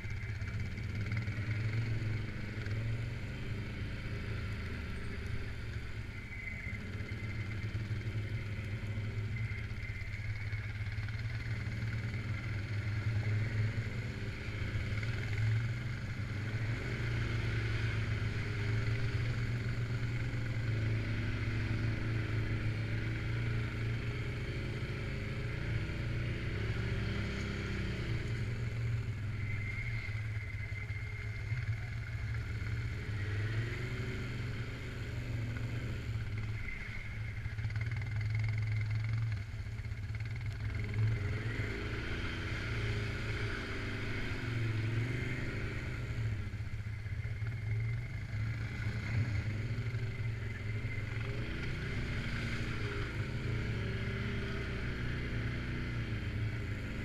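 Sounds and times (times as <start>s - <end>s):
quad bike engine revving: 11.6s - 30.0s, 32.4s - 46.6s, 47.5s - 57.0s.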